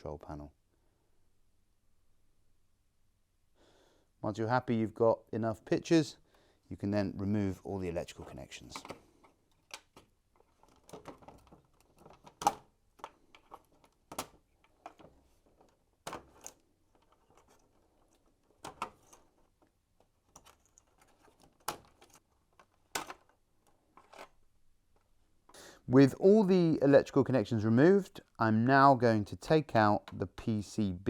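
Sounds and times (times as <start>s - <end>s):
wires rustling and rattling: 8.1s - 25.2s.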